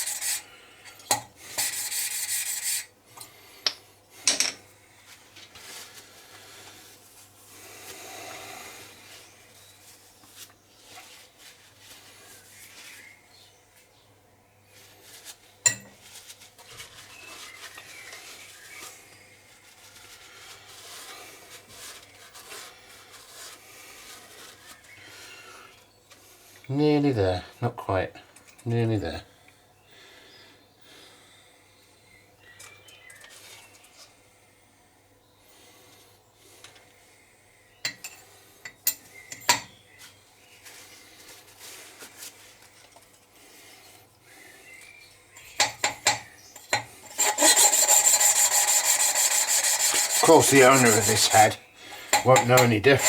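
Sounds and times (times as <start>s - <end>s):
valve grinding on seat: 47.0s - 51.5s.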